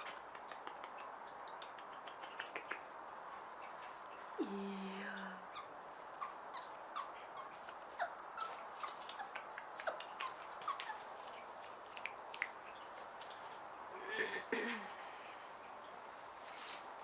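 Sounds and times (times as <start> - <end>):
small animal squeaking: 5.4 - 11.0.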